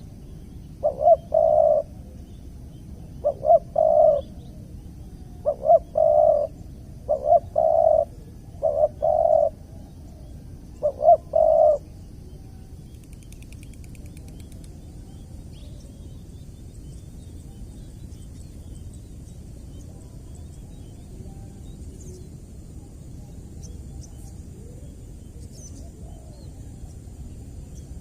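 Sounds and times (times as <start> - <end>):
dove cooing: 0.8 - 2.3, 2.9 - 4.5, 5.2 - 12.6, 24.0 - 26.9.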